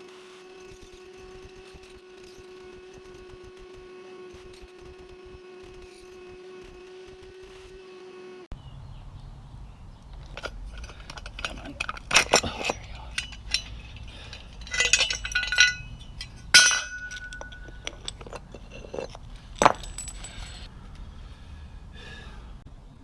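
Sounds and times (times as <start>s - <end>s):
hand tools clinking on metal: 10.2s - 20.7s
metal ringing tone: 10.4s - 20.7s.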